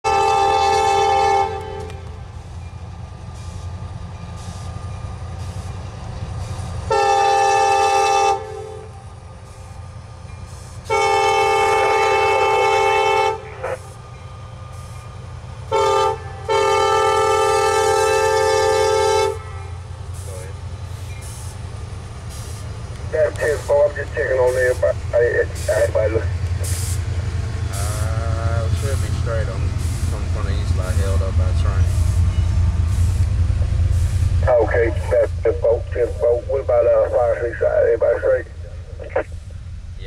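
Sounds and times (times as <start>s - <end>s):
locomotive air horn blasts: 0.0s - 2.1s, 6.8s - 9.0s, 10.8s - 13.8s, 15.7s - 19.8s
low rumble of train: 0.0s - 40.0s.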